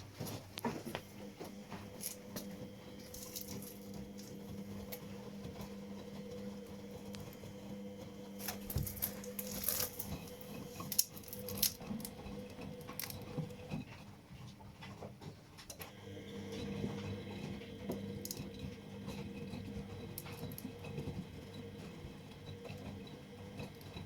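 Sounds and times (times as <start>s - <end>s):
wet laundry tumbling: 0.0s - 13.9s
washing machine motor hum: 0.0s - 24.0s.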